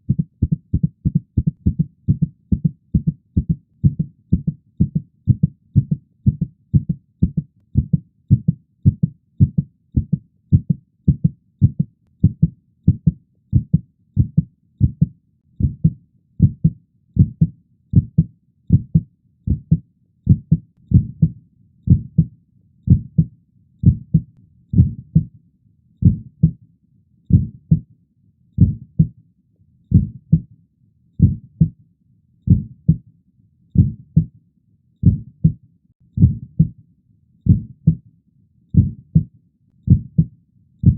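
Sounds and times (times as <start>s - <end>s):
heartbeat thumps: 0.0s - 21.3s, 21.9s - 22.3s, 22.9s - 25.3s, 26.0s - 26.6s, 27.3s - 27.9s, 28.6s - 29.1s, 29.9s - 30.4s, 31.2s - 31.8s, 32.5s - 33.0s, 33.8s - 34.3s, 35.0s - 35.6s, 36.2s - 36.8s, 37.5s - 38.0s, 38.8s - 39.3s, 39.9s - 40.9s.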